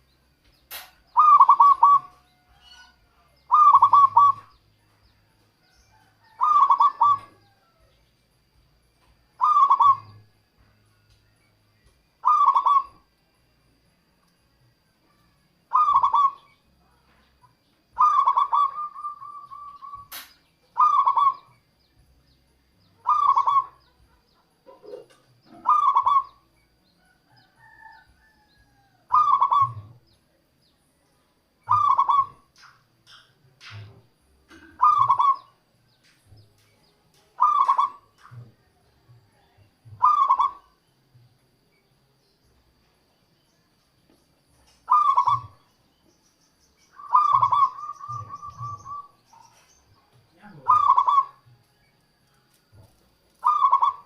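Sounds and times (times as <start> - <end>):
dove cooing: 0.7 - 4.6, 5.6 - 7.9, 9.4 - 10.3, 12.2 - 13.1, 15.7 - 17.2, 17.9 - 21.5, 22.9 - 26.5, 27.3 - 30.1, 31.7 - 32.5, 33.1 - 35.6, 37.4 - 40.8, 44.8 - 45.7, 47.0 - 51.7, 52.7 - 54.0.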